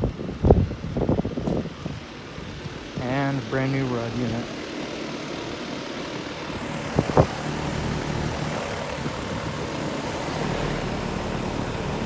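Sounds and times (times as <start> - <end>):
air conditioner fan running: 0.0 - 12.0.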